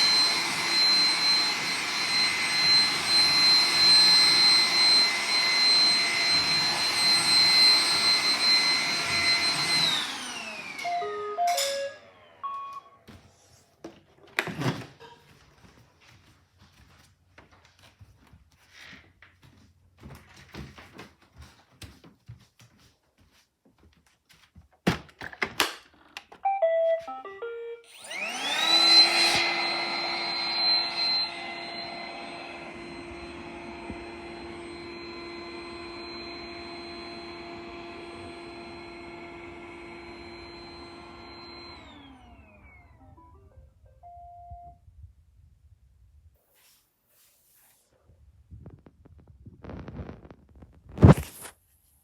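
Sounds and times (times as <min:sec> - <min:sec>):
robot vacuum motor whine: 0:00.0 - 0:12.8, 0:26.6 - 0:43.2
short beeps: 0:10.9 - 0:12.9, 0:26.5 - 0:27.9.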